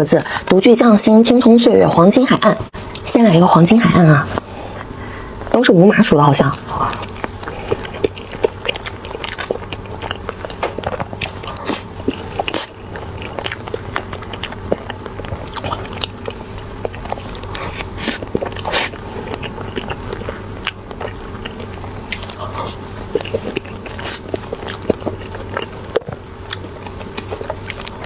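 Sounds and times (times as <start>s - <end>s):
biting and chewing soft buns: 6.4s - 28.0s.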